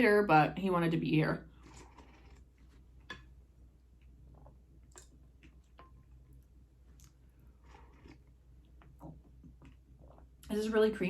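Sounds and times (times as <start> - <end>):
person chewing: 1.6 - 10.5
small mouth clicks: 4.8 - 5.9.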